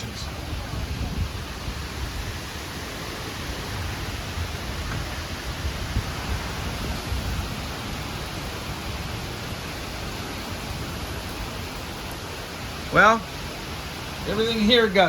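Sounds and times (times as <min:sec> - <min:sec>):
wind buffeting microphone: 0:00.0 - 0:14.4
wind and rain rushing: 0:00.0 - 0:15.0.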